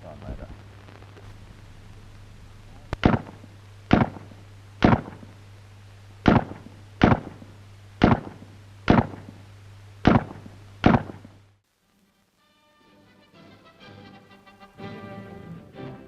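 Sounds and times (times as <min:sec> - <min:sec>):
rifle shots: 0:03.0 - 0:05.4, 0:06.2 - 0:11.4.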